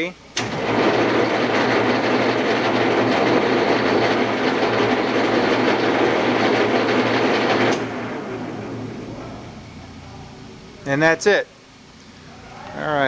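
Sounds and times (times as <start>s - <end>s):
grinder table drive rattling: 0.6s - 8.2s.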